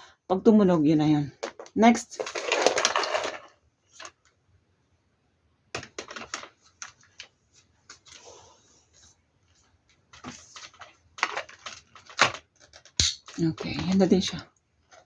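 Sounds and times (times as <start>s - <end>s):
plastic clicks and rattles: 10.6s - 14.0s.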